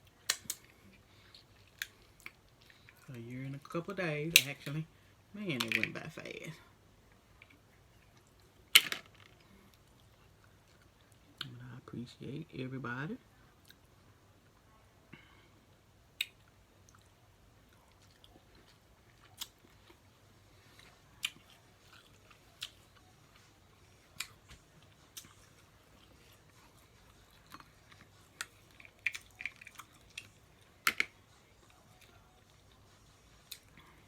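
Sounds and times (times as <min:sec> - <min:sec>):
chewing: 0:00.1 - 0:03.1, 0:09.4 - 0:11.5, 0:16.2 - 0:34.0.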